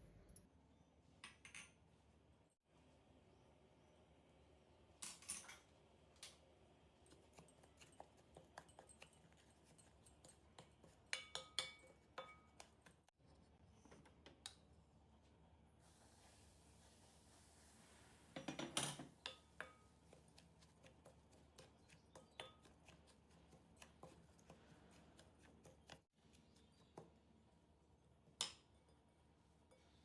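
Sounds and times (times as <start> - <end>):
utensils clicking on dishes: 7.1 - 13.0.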